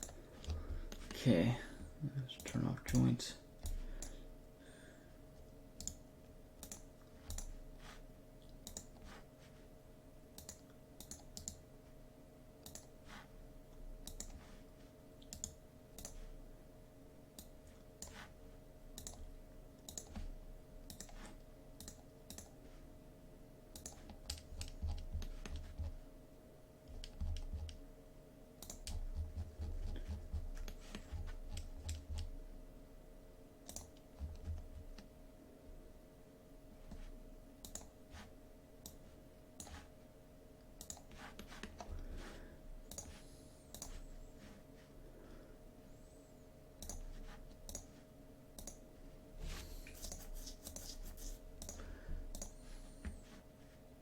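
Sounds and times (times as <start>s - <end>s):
low electrical hum: 0.0s - 54.0s
computer mouse clicks: 5.8s - 6.0s, 6.6s - 7.6s, 8.4s - 9.1s, 10.4s - 11.6s, 12.6s - 13.0s, 14.0s - 14.4s, 15.2s - 16.3s, 17.3s - 18.2s, 18.9s - 22.6s, 23.7s - 25.9s, 28.6s - 29.1s, 33.6s - 35.1s, 36.9s - 38.0s, 38.8s - 39.0s, 39.6s - 39.9s, 40.8s - 42.0s, 42.9s - 44.0s, 46.8s - 48.8s, 49.9s - 52.6s.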